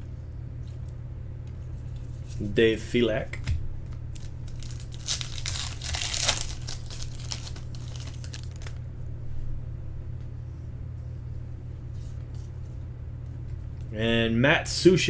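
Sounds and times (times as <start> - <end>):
steady low hum: 0.0 - 15.0
cards being handled: 3.4 - 8.8
card pack wrappers crinkling: 4.1 - 8.8.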